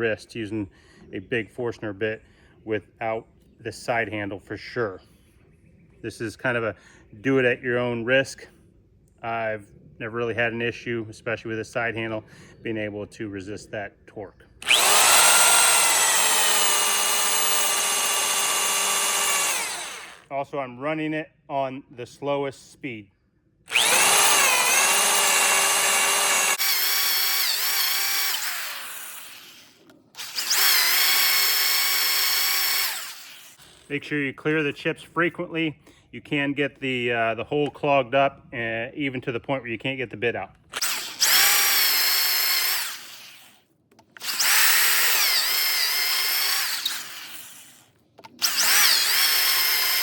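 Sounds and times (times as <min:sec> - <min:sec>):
drill motor whining into wood: 0:14.6 - 0:20.3, 0:23.7 - 0:33.9, 0:40.7 - 0:50.0.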